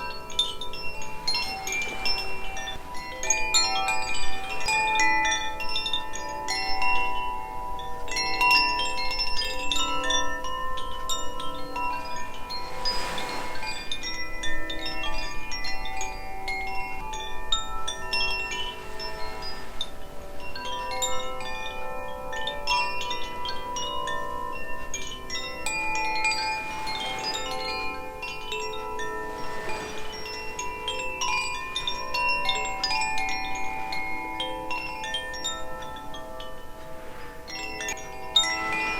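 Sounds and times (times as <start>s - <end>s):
wind chimes tinkling: 0.0s - 38.9s.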